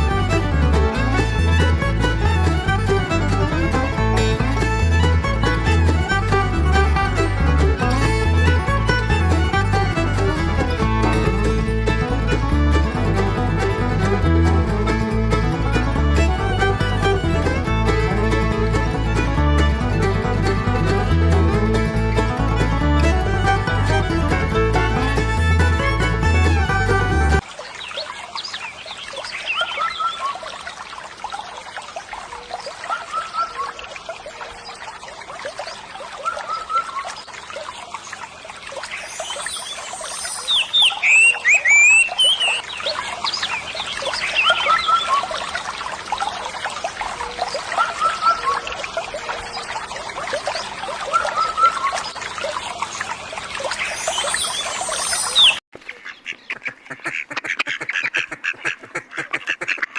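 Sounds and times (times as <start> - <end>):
birds and animals chirping: 24.8 - 30.7, 32.4 - 46.4, 47.1 - 59.9
trickling water hiss: 27.4 - 59.9.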